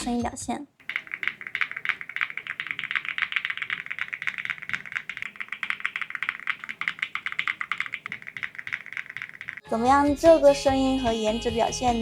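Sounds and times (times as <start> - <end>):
mechanical keyboard typing: 0.8 - 9.7.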